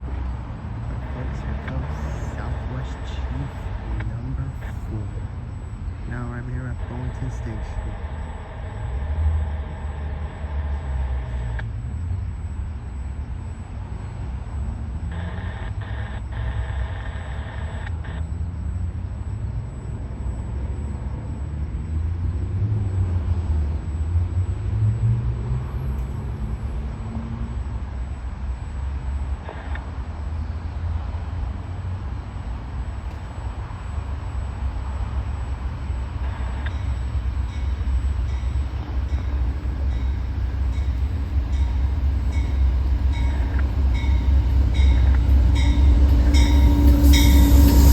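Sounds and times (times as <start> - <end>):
low diesel rumble: 0.0 - 47.9
train horn: 38.4 - 47.9.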